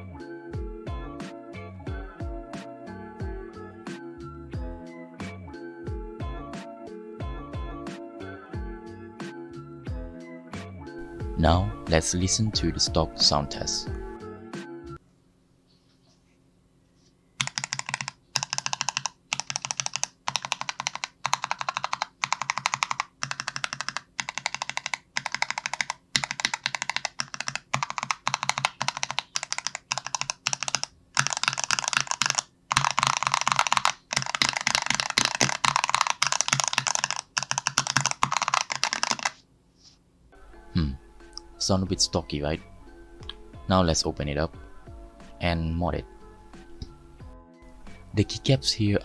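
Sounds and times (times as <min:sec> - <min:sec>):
keyboard keys clacking: 0:11.0 - 0:14.2, 0:17.4 - 0:39.4.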